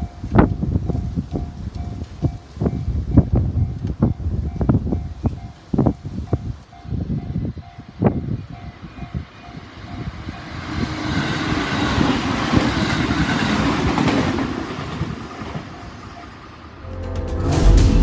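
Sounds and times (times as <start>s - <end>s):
crossing warning bell ringing: 0.0s - 10.6s
train passing: 0.0s - 18.0s
music: 16.8s - 18.0s.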